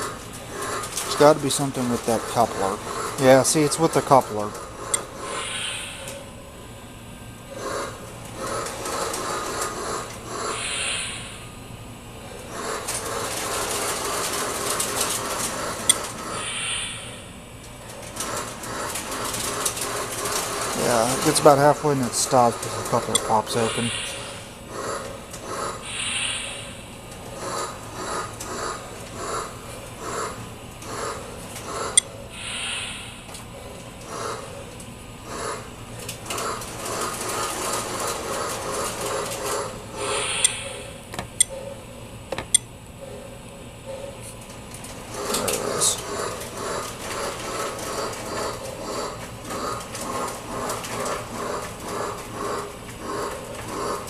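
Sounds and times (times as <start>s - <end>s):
model train motor whirring: 0.0s - 5.8s
toy train soft chuffs: 0.0s - 6.2s, 7.5s - 11.6s, 18.1s - 33.4s, 35.3s - 41.0s
steam hiss: 32.4s - 33.2s.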